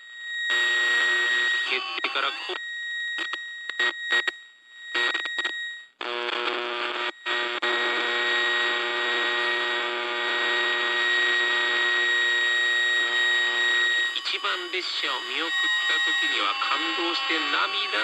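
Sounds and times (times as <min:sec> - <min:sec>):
radio static hiss: 0:01.1 - 0:02.6, 0:06.0 - 0:18.0.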